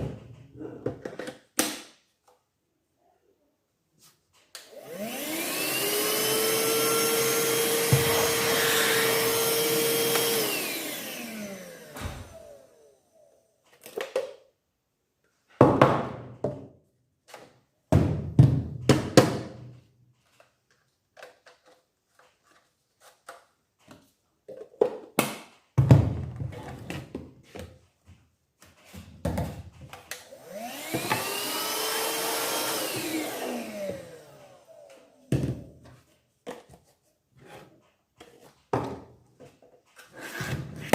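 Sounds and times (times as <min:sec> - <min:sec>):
handheld vacuum whining: 0:04.6 - 0:13.4, 0:29.9 - 0:35.6.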